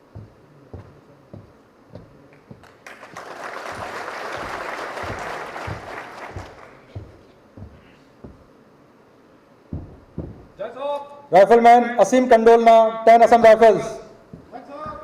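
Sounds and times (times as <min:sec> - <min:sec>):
soft low thuds: 0:00.0 - 0:02.7, 0:03.7 - 0:08.7, 0:09.6 - 0:10.6, 0:13.4 - 0:15.0
audience applauding: 0:02.6 - 0:06.9.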